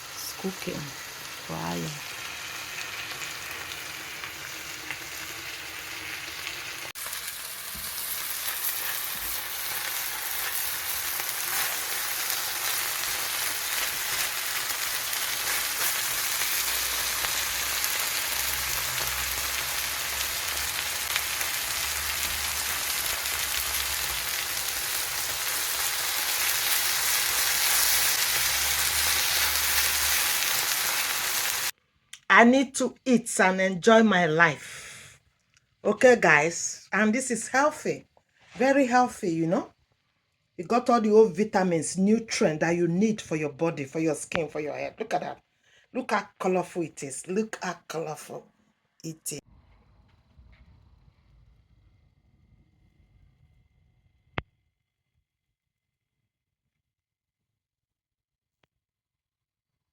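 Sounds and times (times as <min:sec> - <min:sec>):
fish and vegetables sizzling in pan: 0:00.0 - 0:31.8.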